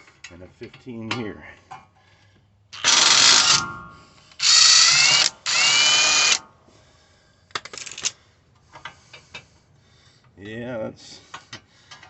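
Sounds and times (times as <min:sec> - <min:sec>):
impact wrench whine: 0:02.8 - 0:06.6.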